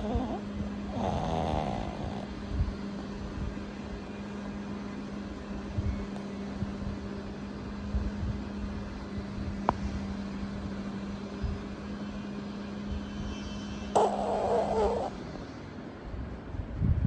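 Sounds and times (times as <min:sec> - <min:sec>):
loud rasping noise: 0:00.0 - 0:02.3, 0:14.0 - 0:15.2
low mechanical hum: 0:00.0 - 0:17.0.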